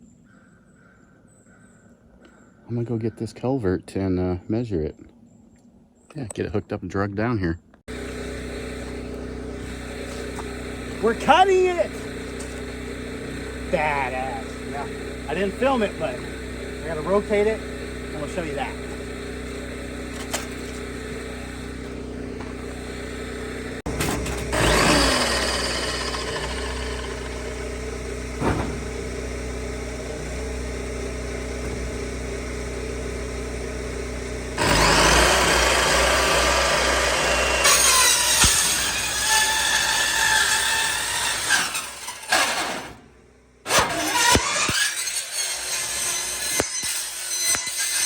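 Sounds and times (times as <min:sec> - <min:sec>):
steady engine hum: 0:07.8 - 0:44.8
power saw cutting pipe: 0:07.9 - 0:48.0.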